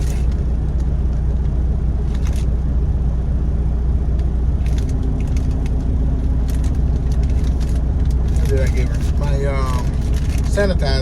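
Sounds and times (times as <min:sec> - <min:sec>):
diesel engine idling: 0:00.0 - 0:11.0
light clicks and rustles: 0:04.6 - 0:10.7.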